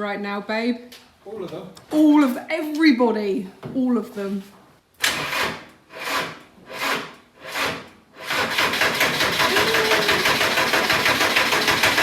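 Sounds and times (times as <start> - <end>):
starter motor cranking engine: 5.0 - 12.0.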